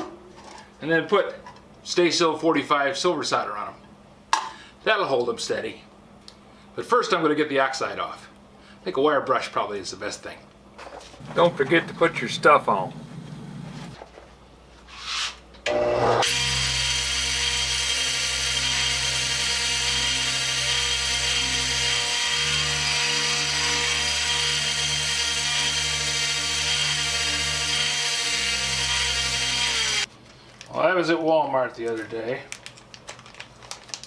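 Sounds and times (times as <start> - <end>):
motor-driven wire brush scouring steel: 11.2 - 14.0, 15.7 - 30.1.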